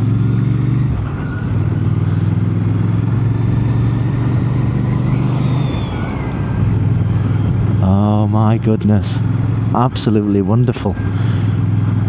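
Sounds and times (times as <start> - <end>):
motorcycle engine running: 1.0 - 8.2.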